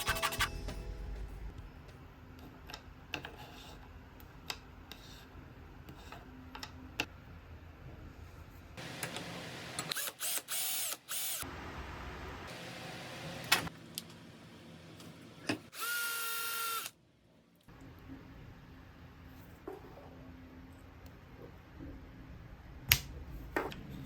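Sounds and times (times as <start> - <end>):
small power tool running: 15.7 - 16.9.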